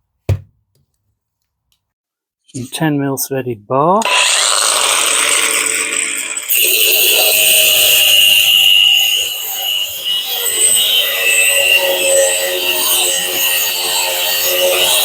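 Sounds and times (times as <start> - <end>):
angle grinder cutting steel: 4.0 - 15.0.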